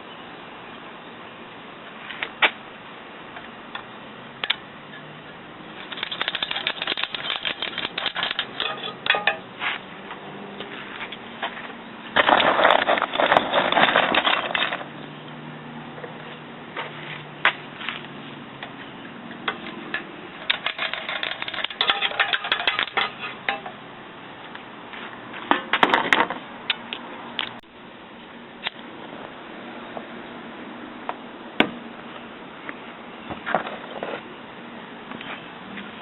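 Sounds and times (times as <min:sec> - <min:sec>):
light metallic clinks and clatters: 0:05.8 - 0:09.5.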